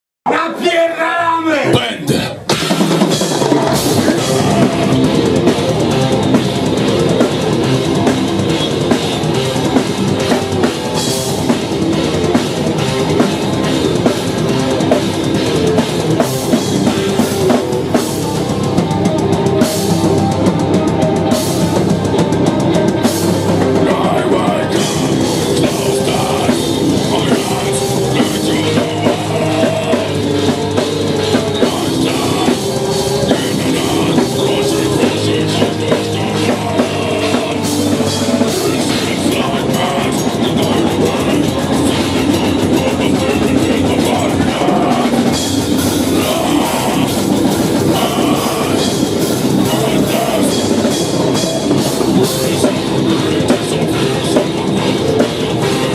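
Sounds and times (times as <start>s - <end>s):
distorted guitars and bass: 1.6s - 55.9s
fast drumming with cymbals: 2.1s - 55.9s.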